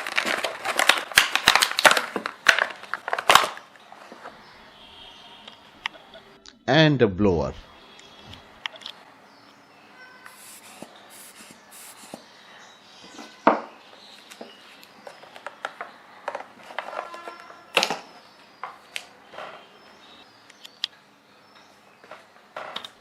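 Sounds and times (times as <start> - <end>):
small objects clicking and knocking: 0.0 - 3.7, 14.4 - 19.6.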